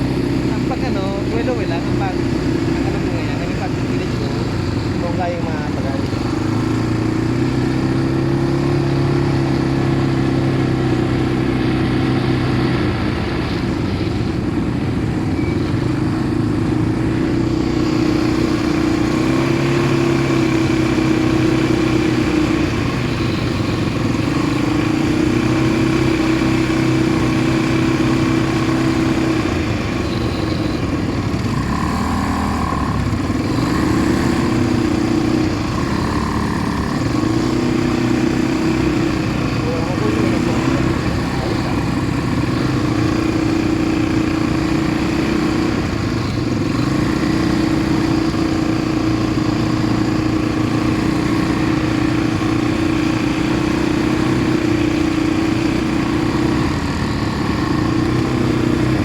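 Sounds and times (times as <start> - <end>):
atv engine revving: 0.0 - 59.0.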